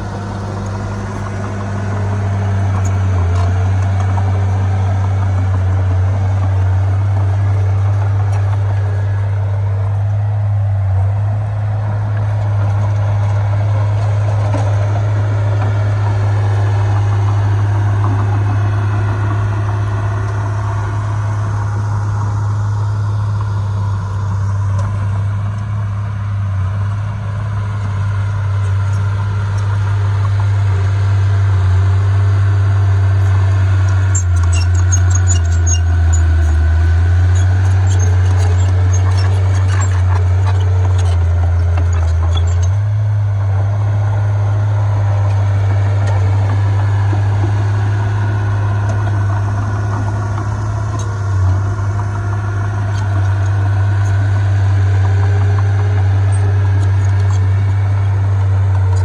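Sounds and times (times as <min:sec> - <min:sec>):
heavy diesel machinery droning: 0:00.0 - 0:59.0
metallic clicks and clanks: 0:33.2 - 0:42.8.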